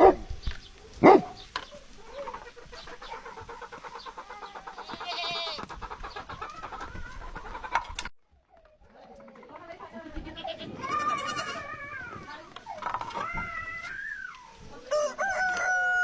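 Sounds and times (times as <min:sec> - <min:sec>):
dog barking: 0:00.0 - 0:00.3, 0:01.0 - 0:01.5.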